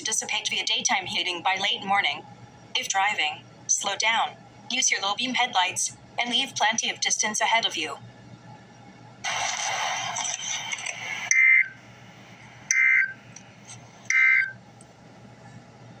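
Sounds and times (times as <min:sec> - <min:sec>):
two-tone data bursts: 0:09.3 - 0:11.8, 0:12.7 - 0:13.2, 0:14.1 - 0:14.6.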